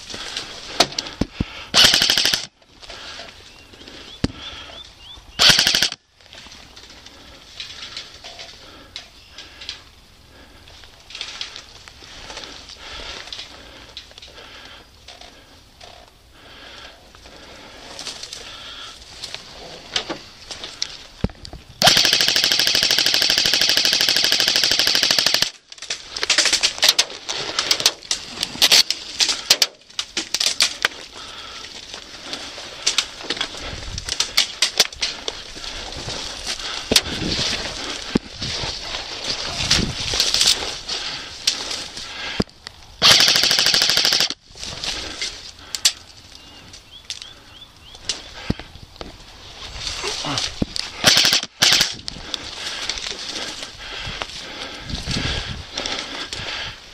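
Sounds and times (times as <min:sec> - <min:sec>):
airsoft guns firing bursts: 0:01.7 - 0:02.5, 0:05.4 - 0:06.0, 0:21.8 - 0:25.6, 0:43.0 - 0:44.4, 0:51.0 - 0:52.0
airsoft single shots: 0:05.4 - 0:06.0.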